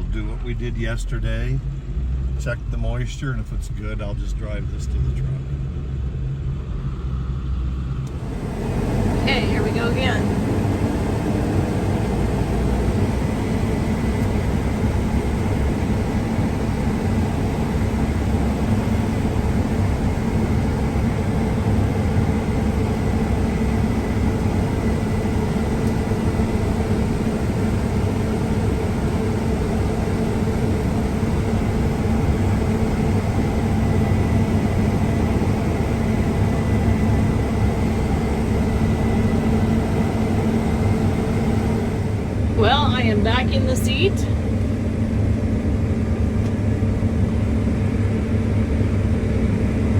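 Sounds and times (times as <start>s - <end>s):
combine harvester engine drone: 0.0s - 49.9s.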